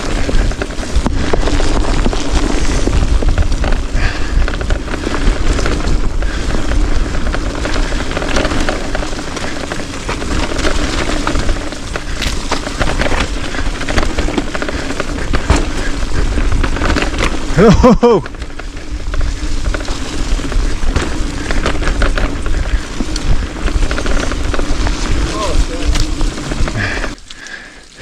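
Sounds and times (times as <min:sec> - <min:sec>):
wind buffeting microphone: 0:18.4 - 0:27.1.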